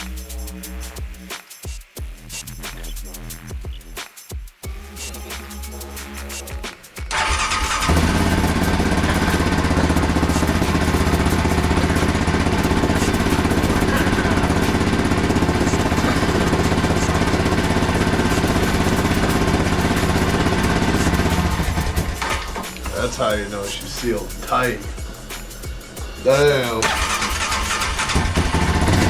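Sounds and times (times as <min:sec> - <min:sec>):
small engine running steadily: 0:07.1 - 0:23.0, 0:26.8 - 0:29.0.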